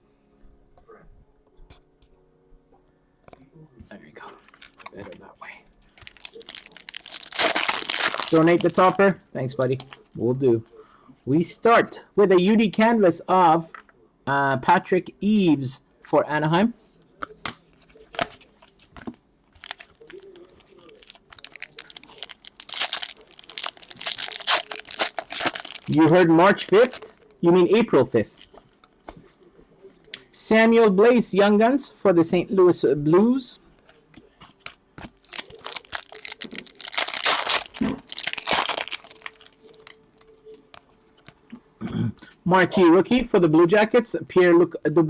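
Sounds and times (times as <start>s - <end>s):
foil wrapper tearing and crinkling: 4.4s - 5.2s, 6.0s - 9.0s, 19.6s - 27.4s, 35.1s - 40.0s.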